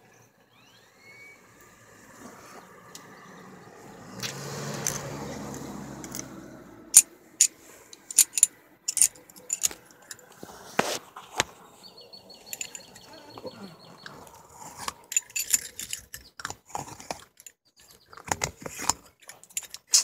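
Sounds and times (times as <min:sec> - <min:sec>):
light metallic clicks: 0:12.4 - 0:13.1.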